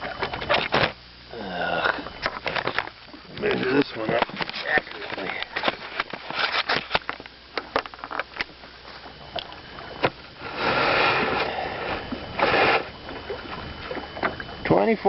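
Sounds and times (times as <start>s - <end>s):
fish handled on a board: 2.2s - 10.2s.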